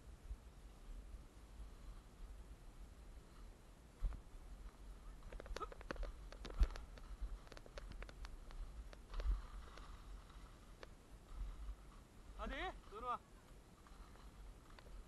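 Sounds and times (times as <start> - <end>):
light sharp clicks and clacks: 4.0 - 15.0.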